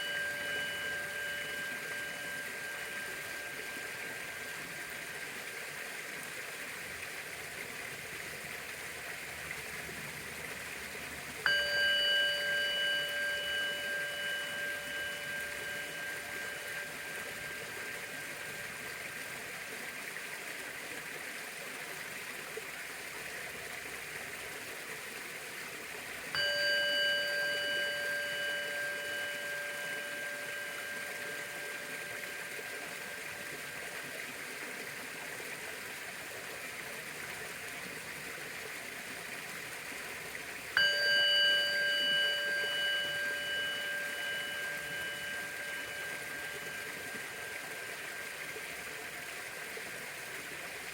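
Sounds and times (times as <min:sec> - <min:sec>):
bowl bell ringing: 0:00.0 - 0:05.8, 0:11.4 - 0:20.5, 0:26.2 - 0:36.3, 0:40.7 - 0:50.9
steady hiss: 0:00.0 - 0:50.9.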